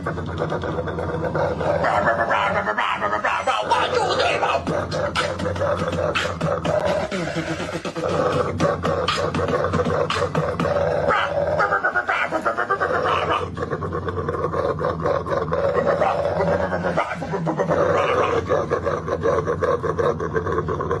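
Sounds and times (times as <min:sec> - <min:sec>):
dog growling and grunting: 0:00.0 - 0:21.0.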